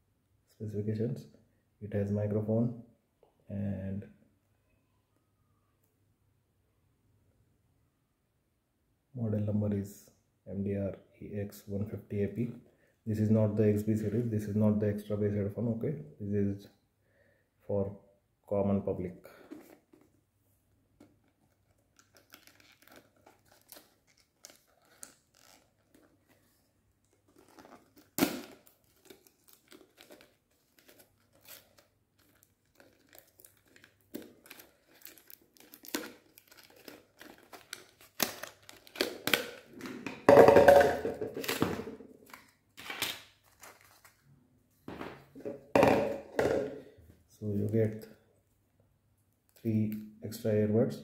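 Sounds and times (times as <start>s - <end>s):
packaging crinkling and tearing: 21.0s - 39.8s, 41.3s - 44.3s.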